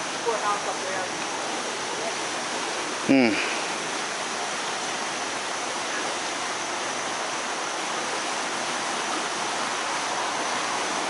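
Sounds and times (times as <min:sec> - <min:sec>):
floodwater rushing: 0:00.0 - 0:11.0.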